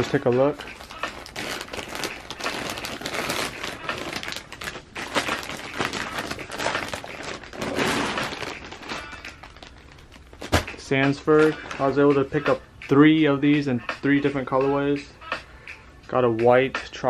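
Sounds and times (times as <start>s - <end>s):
packaging crinkling and tearing: 0.0s - 10.8s.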